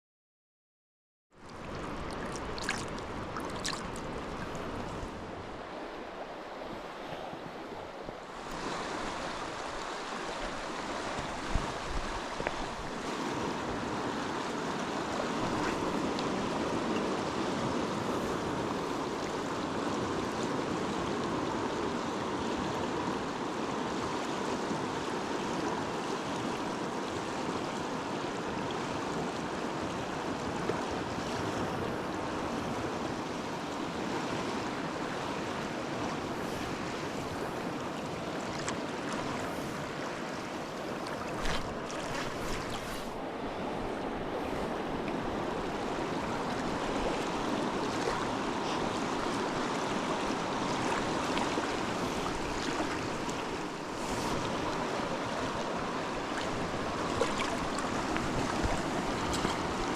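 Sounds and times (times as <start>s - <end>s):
river water flowing: 1.4s - 59.9s.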